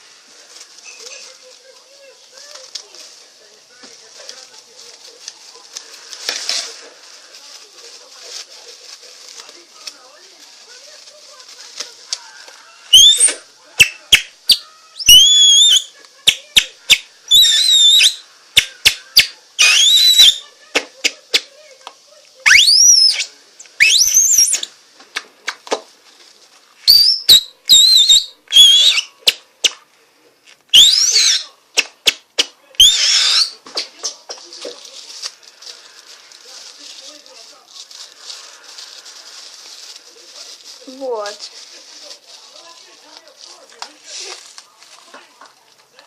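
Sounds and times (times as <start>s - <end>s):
shrill plastic strip whistles: 12.9s - 20.4s, 22.4s - 24.7s, 26.9s - 29.8s, 30.7s - 33.6s.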